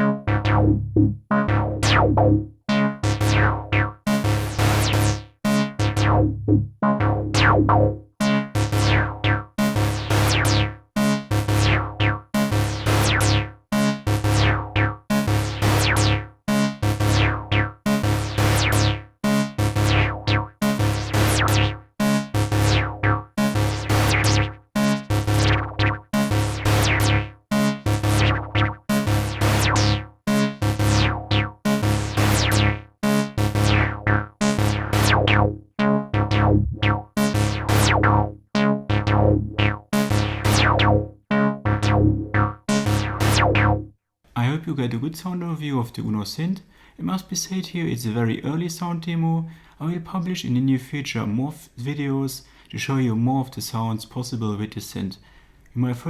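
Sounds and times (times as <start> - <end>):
synthesizer bass notes: 0.0 - 44.0.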